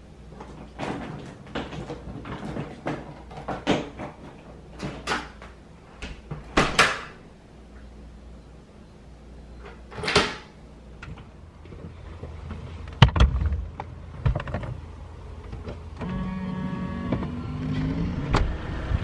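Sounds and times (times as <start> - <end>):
objects knocking and clunking: 0.3 - 7.2, 9.6 - 15.9.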